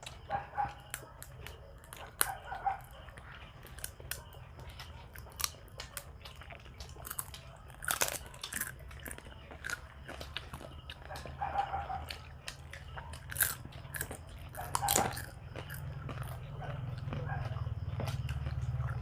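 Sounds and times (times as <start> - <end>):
chewing crunchy chips: 0.0 - 19.0.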